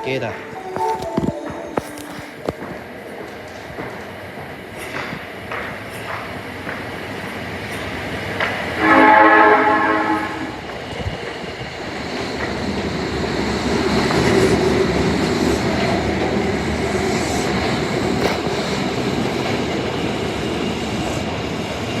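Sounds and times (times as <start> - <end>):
subway train running: 0.0 - 22.0.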